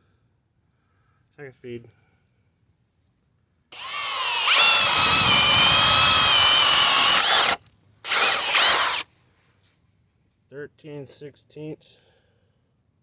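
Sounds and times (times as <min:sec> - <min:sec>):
cordless drill boring wood: 0:03.8 - 0:09.0.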